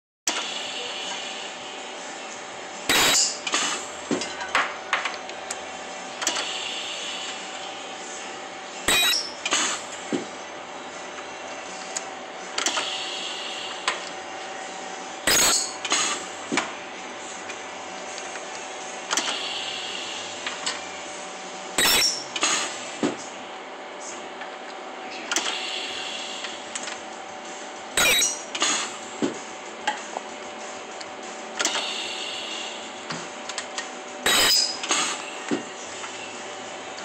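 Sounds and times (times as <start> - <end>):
steady machine hum: 0.3 - 37.0.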